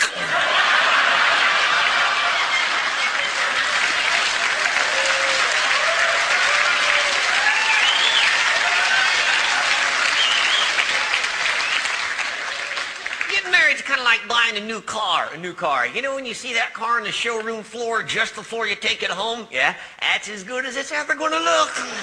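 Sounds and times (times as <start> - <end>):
audience clapping: 0.0 - 14.6.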